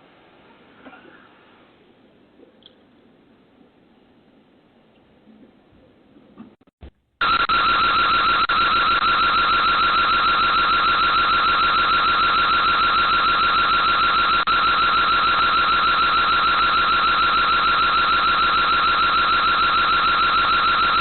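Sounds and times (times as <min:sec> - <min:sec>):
electronic alarm siren warbling: 0:07.2 - 0:21.0.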